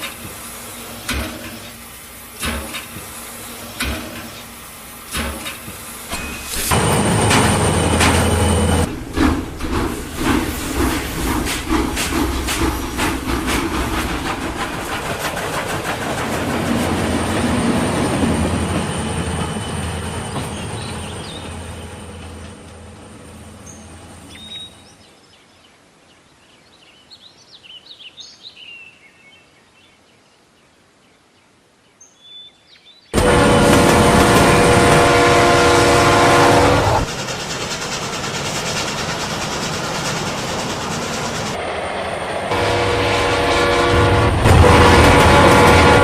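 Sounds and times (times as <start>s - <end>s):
train wheels clattering on rails: 0.0s - 23.1s, 33.2s - 41.6s, 43.9s - 46.0s.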